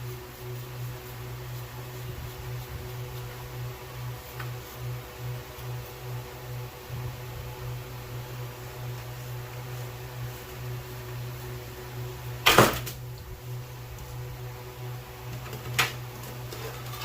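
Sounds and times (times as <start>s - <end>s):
steady low hum: 0.0s - 17.0s
scrape and knock: 16.4s - 17.0s.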